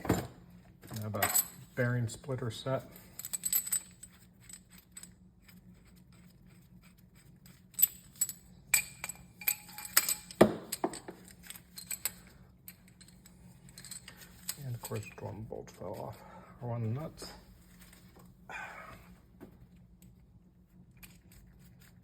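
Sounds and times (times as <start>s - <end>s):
steel parts clinking: 0.8s - 1.7s, 2.7s - 5.1s, 7.7s - 16.2s.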